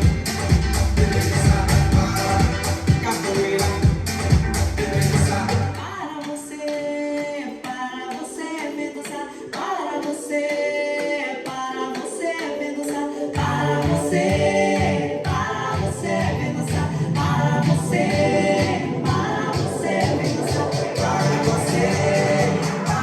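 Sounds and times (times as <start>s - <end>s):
pulsing bass line: 0.0s - 5.9s, 13.4s - 23.0s
house music: 0.0s - 23.0s
sung vocals: 0.0s - 23.0s.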